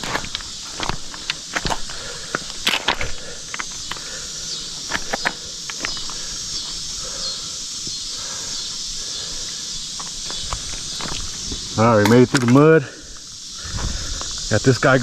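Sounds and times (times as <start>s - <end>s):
footsteps through mud: 0.0s - 6.9s
steady high hiss: 0.0s - 15.0s.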